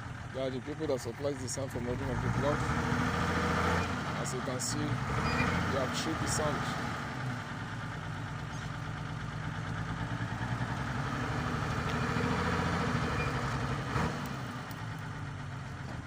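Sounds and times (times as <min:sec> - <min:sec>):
truck engine running: 0:00.0 - 0:16.0.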